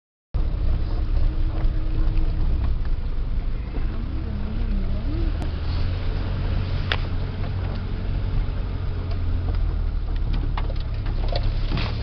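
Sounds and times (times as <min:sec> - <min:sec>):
engine running with low drone: 0:00.4 - 0:12.0.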